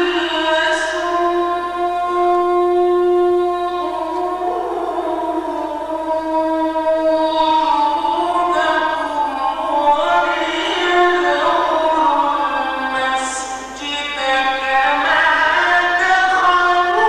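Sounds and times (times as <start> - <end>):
man chanting melodically: 0.0 - 17.0.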